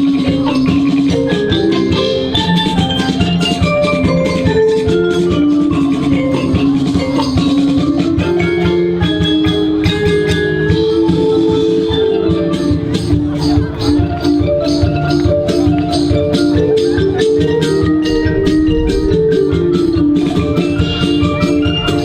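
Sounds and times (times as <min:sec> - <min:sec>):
tuned mallet percussion melody: 0:00.2 - 0:22.0
steady drum strokes: 0:17.8 - 0:22.0.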